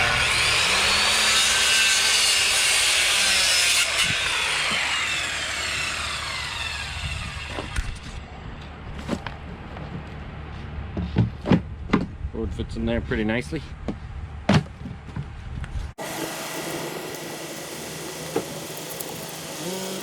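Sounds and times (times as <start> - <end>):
power saw cutting wood: 0.0 - 8.2, 16.0 - 20.0
saw blade winding down: 0.0 - 8.2, 16.0 - 20.0.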